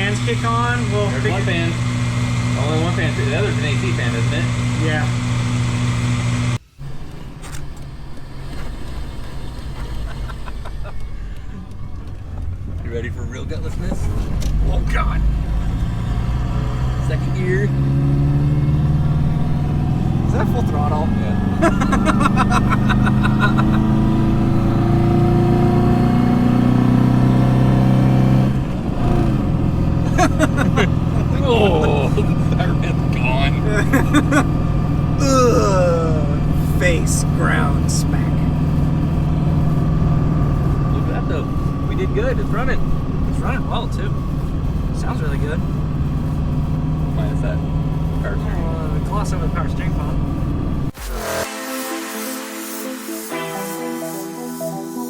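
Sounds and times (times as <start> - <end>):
cooling fan running: 0.0 - 6.6, 17.7 - 26.5, 28.5 - 51.0
car engine idling: 0.0 - 51.1
car engine and road rumble: 0.0 - 51.4.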